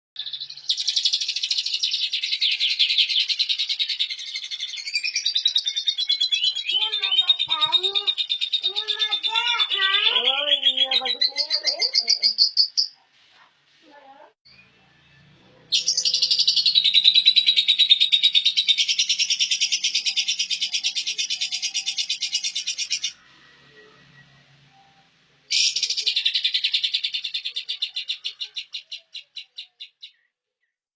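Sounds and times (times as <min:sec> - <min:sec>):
songbird trilling: 0:15.7 - 0:23.2.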